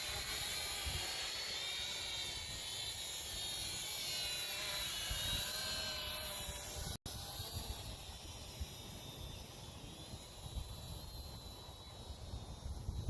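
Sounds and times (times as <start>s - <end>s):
wind rumbling on microphone: 10.0s - 13.0s.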